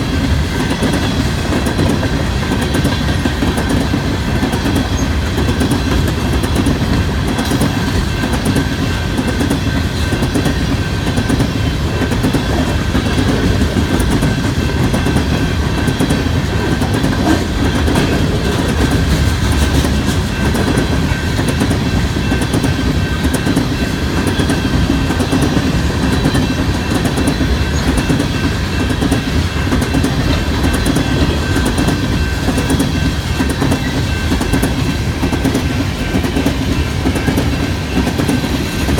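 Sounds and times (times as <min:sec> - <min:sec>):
freight train rumble: 0:00.0 - 0:38.9
wheels clacking over rail joints: 0:00.0 - 0:38.9.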